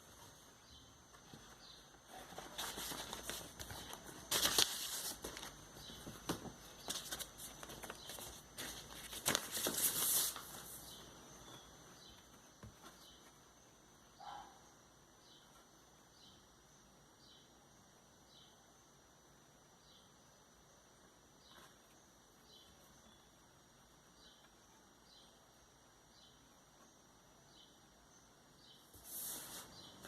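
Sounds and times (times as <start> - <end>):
record sleeve rustling and crinkling: 2.1 - 11.6.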